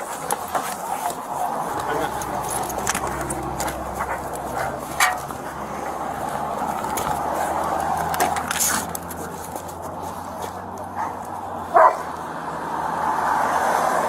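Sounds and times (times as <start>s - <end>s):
dog barking: 10.9s - 12.1s.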